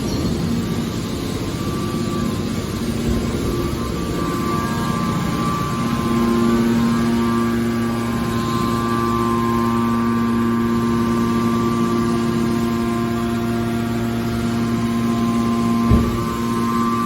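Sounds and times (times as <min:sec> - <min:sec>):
hydraulic power unit humming: 0:00.0 - 0:17.0
low thud: 0:15.9 - 0:16.5.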